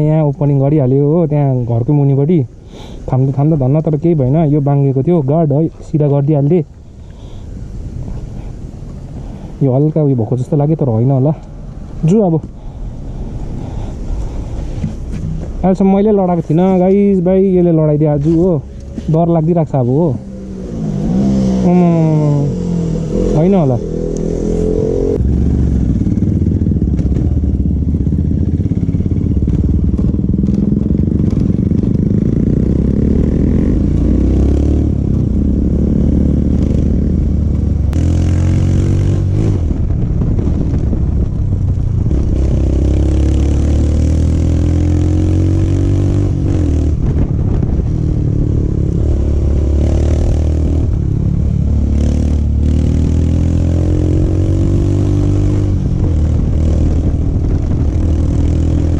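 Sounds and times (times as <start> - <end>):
motorcycle engine revving: 16.7 - 58.9.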